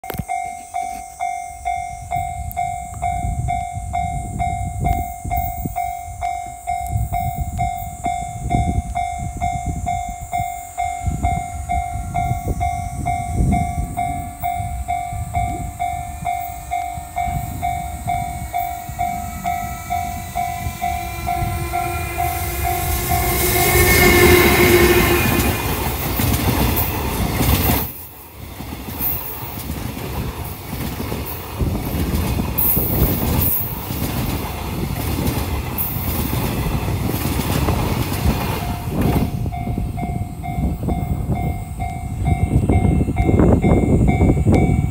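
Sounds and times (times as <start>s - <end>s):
crossing warning bell dinging: 0.0s - 28.1s, 31.3s - 44.9s.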